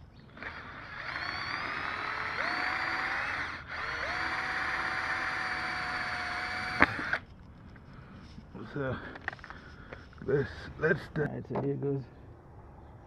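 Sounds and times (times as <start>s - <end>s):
power drill whining: 0.3s - 7.2s.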